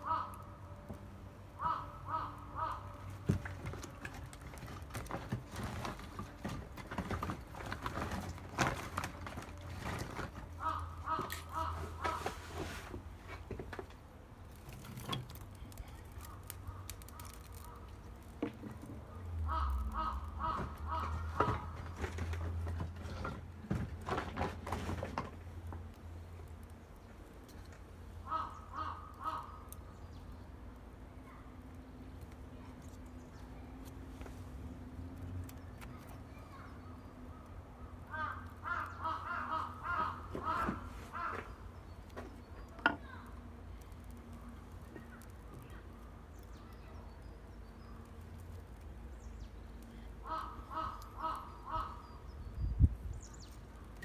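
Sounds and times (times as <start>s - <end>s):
bird calling: 0.0s - 0.7s, 1.6s - 4.0s, 4.6s - 12.9s, 16.2s - 22.3s, 28.2s - 30.3s, 35.5s - 43.3s, 49.2s - 54.0s
crow cawing: 0.0s - 0.7s, 1.5s - 3.4s, 9.8s - 12.3s, 16.6s - 17.9s, 19.2s - 22.0s, 28.2s - 29.8s, 38.0s - 41.7s, 50.2s - 52.2s
wood fire crackling: 0.0s - 54.0s.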